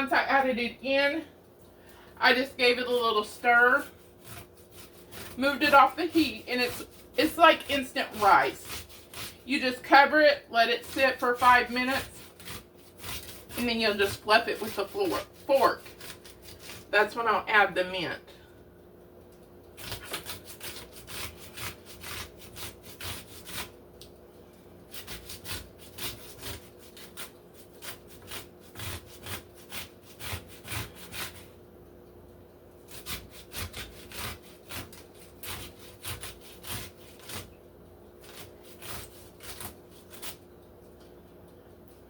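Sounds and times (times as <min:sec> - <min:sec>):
cucumber grated on metal grater: 0:02.4 - 0:16.9, 0:19.8 - 0:23.7, 0:24.9 - 0:31.5, 0:32.8 - 0:37.6.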